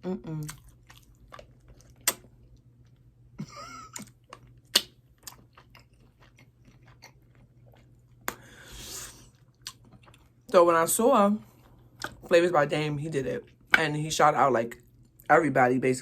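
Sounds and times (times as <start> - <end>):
wet mouth clicks and smacks: 1.7 - 2.3, 3.9 - 5.4.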